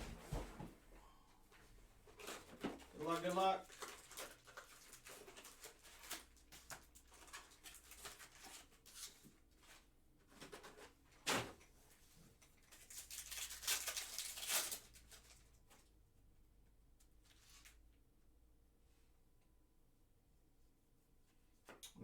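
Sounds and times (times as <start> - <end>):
cards rustling: 2.2 - 9.8
foil wrappers crinkling and tearing: 2.2 - 9.8, 12.4 - 15.8.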